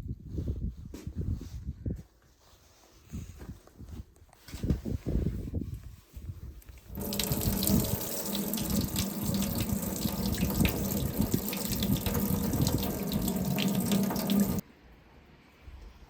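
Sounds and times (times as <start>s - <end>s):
tap water running into a sink: 6.9s - 14.6s.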